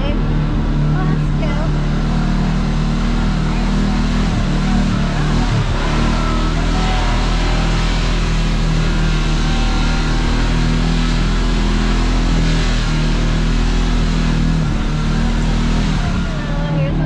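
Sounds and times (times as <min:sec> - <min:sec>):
constant rushing noise: 0:00.0 - 0:17.0
engine running: 0:00.0 - 0:17.0.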